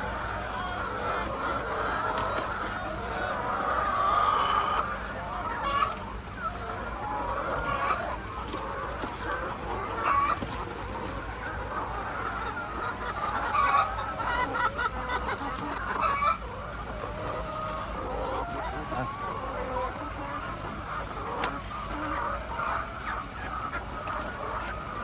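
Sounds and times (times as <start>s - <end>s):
chicken squawks: 0.0s - 25.0s
chickens clucking: 0.0s - 25.0s.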